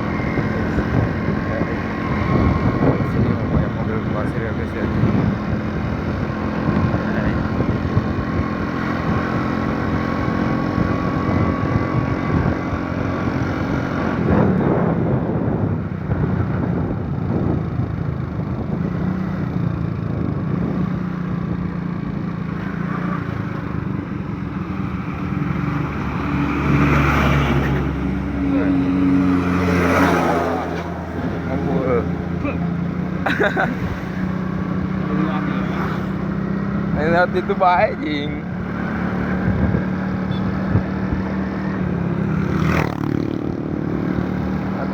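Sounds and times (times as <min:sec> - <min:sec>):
motorcycle engine running: 0:00.0 - 0:27.0, 0:27.8 - 0:44.9
passing traffic: 0:00.0 - 0:44.9
road and wind noise: 0:00.0 - 0:44.9.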